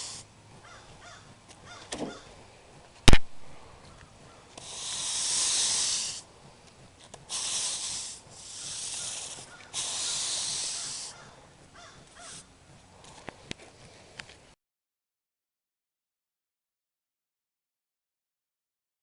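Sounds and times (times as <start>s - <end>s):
push broom scraping wet concrete: 4.6s - 6.3s, 7.0s - 11.2s.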